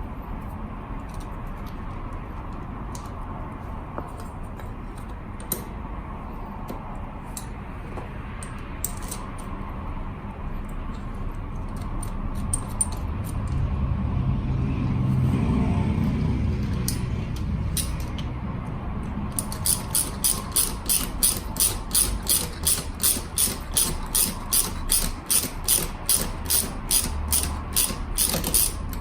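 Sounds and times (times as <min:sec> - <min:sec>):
steady low rumble: 0:12.2 - 0:19.6.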